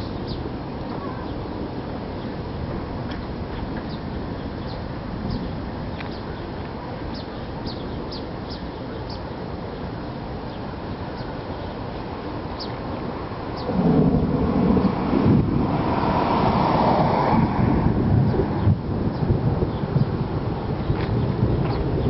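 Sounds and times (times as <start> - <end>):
small birds chirping: 0.0 - 13.8, 20.8 - 22.0
steady low outdoor noise: 0.0 - 22.0.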